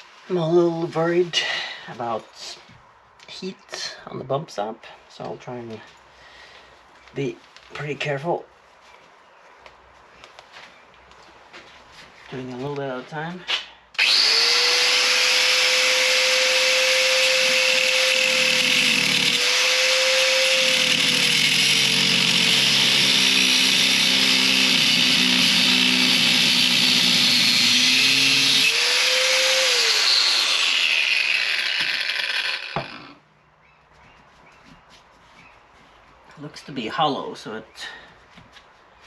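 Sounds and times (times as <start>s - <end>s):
power cutting tool whining: 14.0s - 33.2s.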